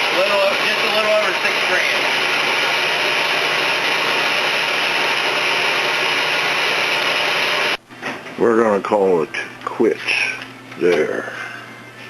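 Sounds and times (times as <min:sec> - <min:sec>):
shop machine running: 0:00.0 - 0:08.2.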